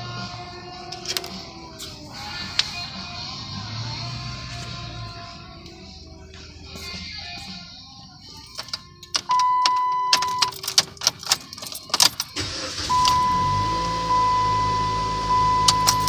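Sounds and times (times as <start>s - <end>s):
car engine humming: 0.0s - 16.0s
clicks and clunks: 0.9s - 2.8s, 8.4s - 14.1s, 15.6s - 16.0s
high beep: 9.3s - 10.5s, 12.9s - 16.0s.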